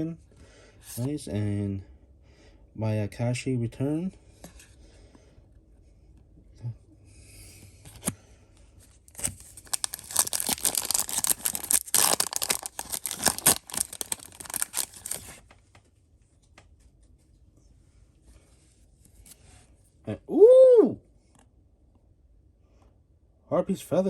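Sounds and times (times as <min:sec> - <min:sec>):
foil wrapper tearing and crinkling: 0:09.1 - 0:15.4.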